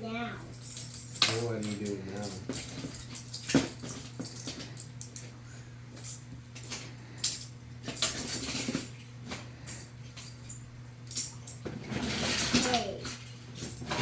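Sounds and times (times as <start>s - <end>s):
steady low hum: 0.0s - 14.0s
toy building pieces clattering: 0.6s - 5.2s, 11.1s - 14.0s.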